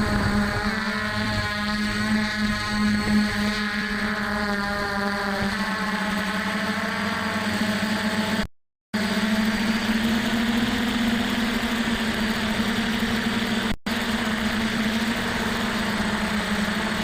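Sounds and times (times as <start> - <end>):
quadcopter motors humming: 0.0 - 17.0.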